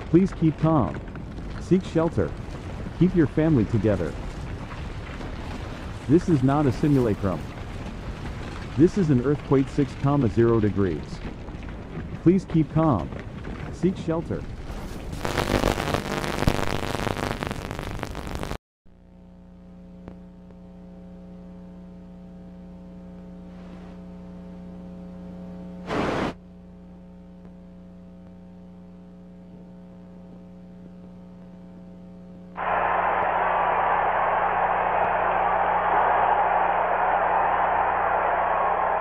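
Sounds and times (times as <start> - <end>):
loud crackling noise: 0.0 - 18.6, 23.0 - 39.0
hissing static: 14.7 - 18.6, 32.6 - 39.0.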